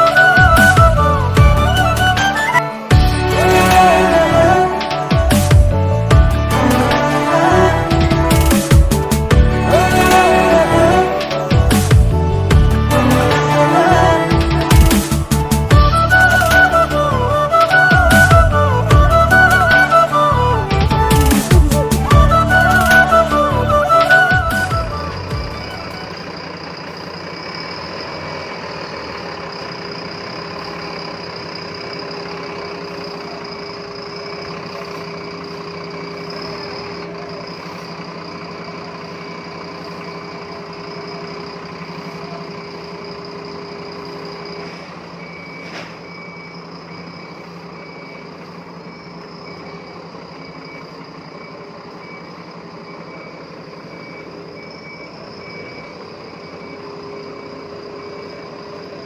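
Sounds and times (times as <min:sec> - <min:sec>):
bus engine and road hum: 0:00.0 - 0:59.0
faint high beeping: 0:22.1 - 0:59.0.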